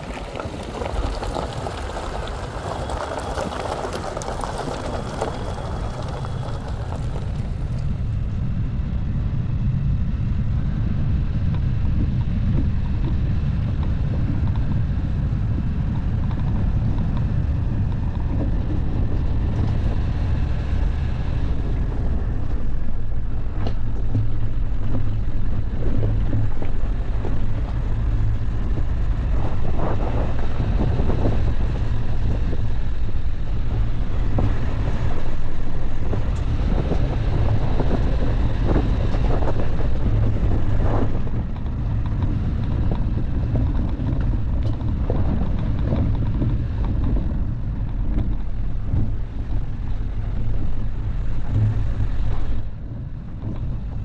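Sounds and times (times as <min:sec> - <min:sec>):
car engine rumble: 0:00.0 - 0:54.0
road and wind noise: 0:00.0 - 0:54.0
knocks and rattles from bumps: 0:17.2 - 0:54.0.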